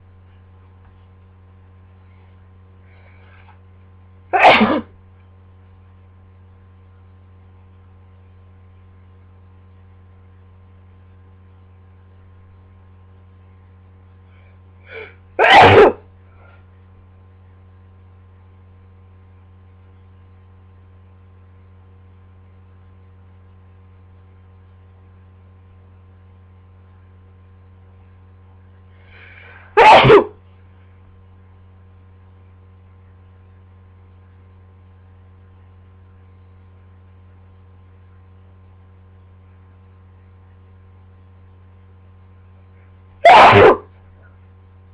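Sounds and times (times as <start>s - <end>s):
low electrical hum: 0.0s - 44.9s
person sneezing: 4.3s - 5.0s, 14.8s - 16.0s, 29.1s - 30.4s, 43.2s - 43.9s.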